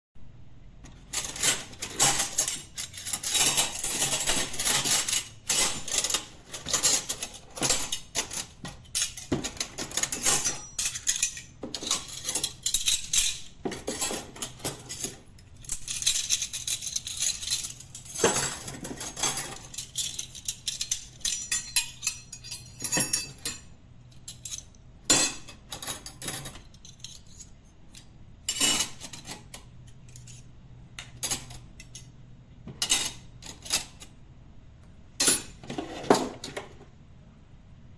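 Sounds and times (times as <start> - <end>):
metal cutlery clinking: 1.0 - 30.5.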